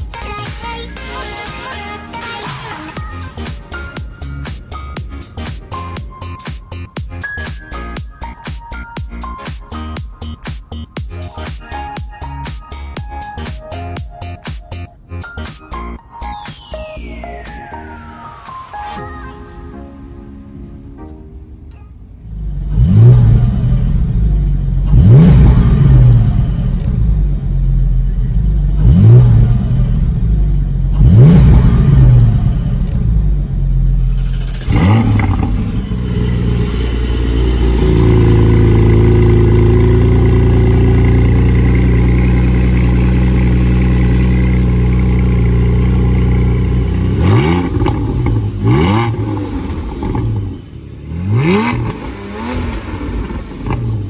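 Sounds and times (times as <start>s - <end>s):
car engine revving: 22.2s - 54.0s.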